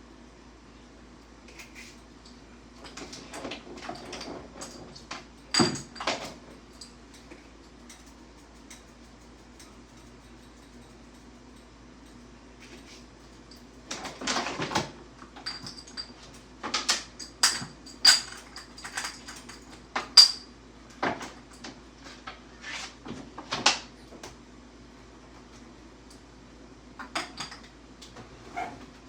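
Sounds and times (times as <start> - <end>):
dishes and utensils clattering: 5.5 - 6.3.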